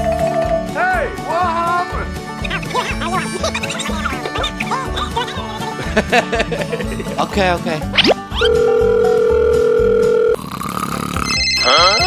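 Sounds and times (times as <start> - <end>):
background music with low beat: 0.0 - 10.3
electronic beep tone: 11.2 - 12.0.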